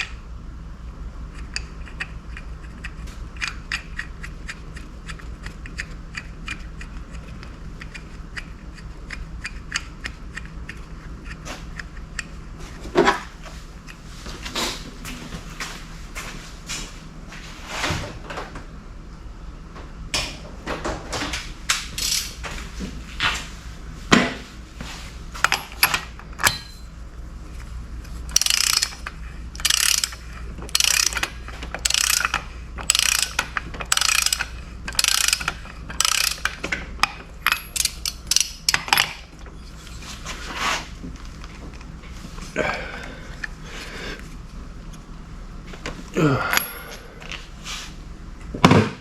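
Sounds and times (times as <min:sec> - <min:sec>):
ratchet wrench clicking: 0:01.3 - 0:07.0, 0:22.0 - 0:22.3, 0:28.3 - 0:39.1.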